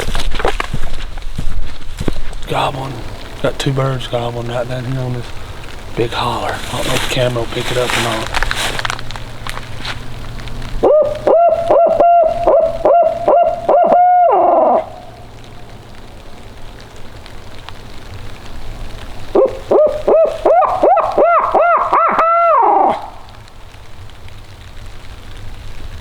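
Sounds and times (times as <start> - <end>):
owl call hoots: 10.8 - 15.3, 19.3 - 23.4.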